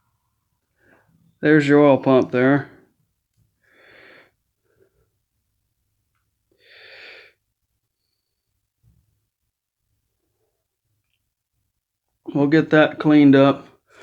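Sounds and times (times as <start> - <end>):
man breathing: 3.6 - 5.2, 6.6 - 7.4.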